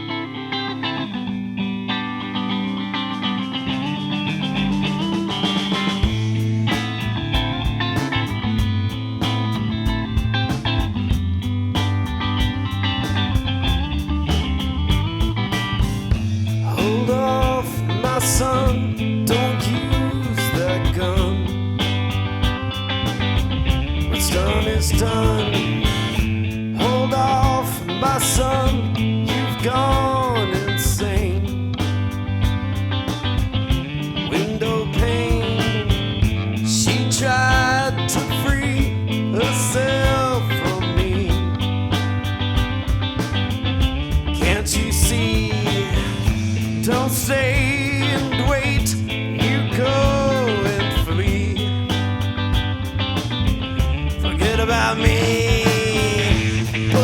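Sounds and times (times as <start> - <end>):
rock band playing: 0.0 - 57.0
sliding lead guitar melody: 0.0 - 57.0.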